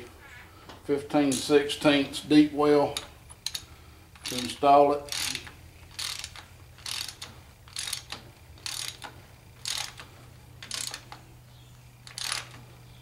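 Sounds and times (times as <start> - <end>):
steady low hum: 0.0 - 13.0
socket wrench ratchet clicking: 2.9 - 11.2, 12.0 - 12.6.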